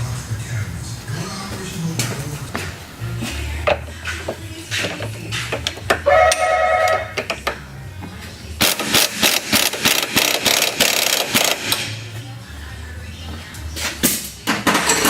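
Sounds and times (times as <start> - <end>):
pneumatic impact wrench rattling: 8.6 - 12.0.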